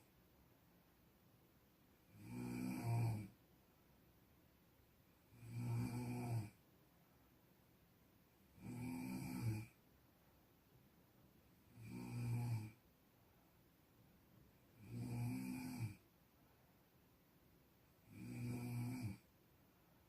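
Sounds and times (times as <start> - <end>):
person snoring: 2.1 - 3.4, 5.3 - 6.6, 8.6 - 9.8, 11.7 - 12.8, 14.8 - 16.0, 18.0 - 19.3.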